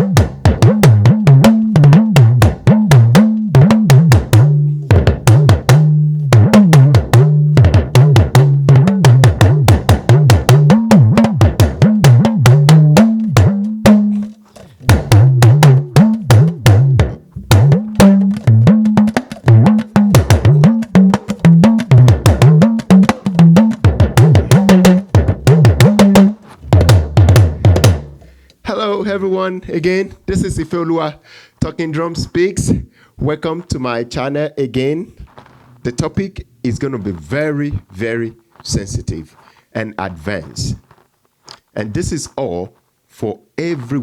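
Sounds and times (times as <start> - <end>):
talking drum played with stick: 0.0 - 28.3.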